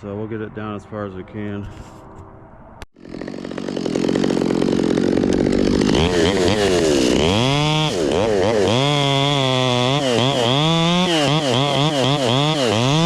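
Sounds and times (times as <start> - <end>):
chainsaw running: 3.0 - 13.0.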